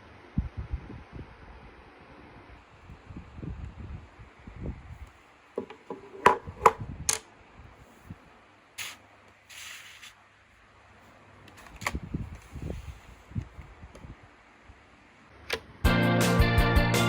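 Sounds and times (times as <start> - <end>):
sharp clicks and knocks: 5.6 - 7.2
short hiss of air: 8.8 - 10.2.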